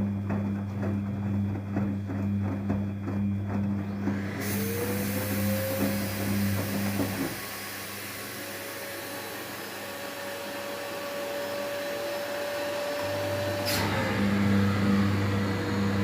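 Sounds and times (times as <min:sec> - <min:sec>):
washing machine drum motor turning: 0:00.0 - 0:16.0
washing machine whine and hiss: 0:03.2 - 0:16.0.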